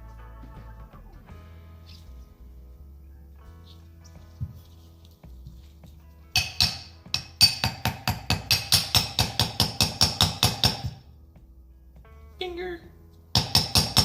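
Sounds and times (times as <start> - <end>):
hammer tapping metal: 6.4 - 11.0, 13.3 - 14.0.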